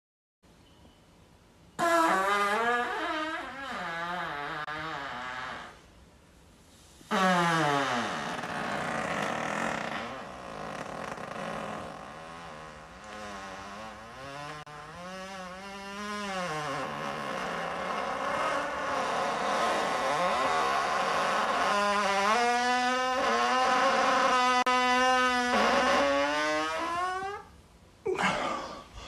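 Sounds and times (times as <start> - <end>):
long buzzing farts: 7.1 - 27.5.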